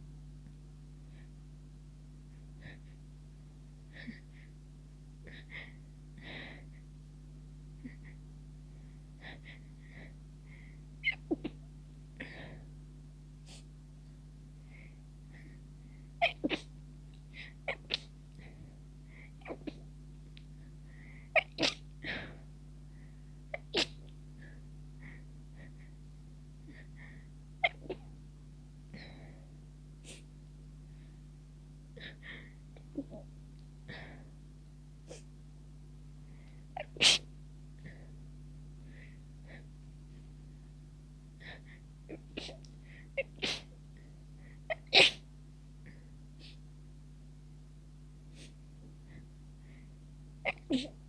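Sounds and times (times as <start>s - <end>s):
stifled sneezes: 16.2s - 16.7s, 17.7s - 18.1s, 21.4s - 22.2s, 23.5s - 24.1s, 36.8s - 37.3s, 42.1s - 42.6s, 43.2s - 43.8s, 44.7s - 45.3s.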